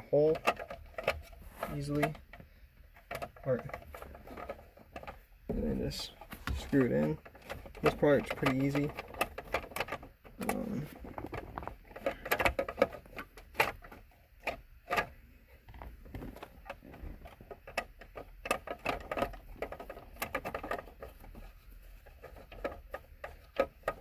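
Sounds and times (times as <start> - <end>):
plastic cover pieces clicking: 6.3 - 21.5.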